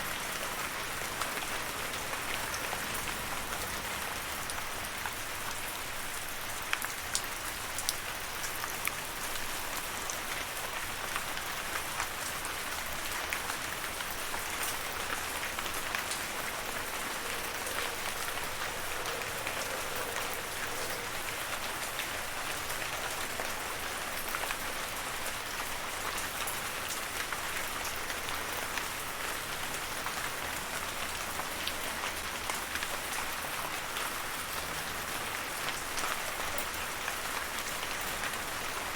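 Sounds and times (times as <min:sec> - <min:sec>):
steady rain hiss: 0:00.0 - 0:38.9
raindrops ticking: 0:11.0 - 0:28.9.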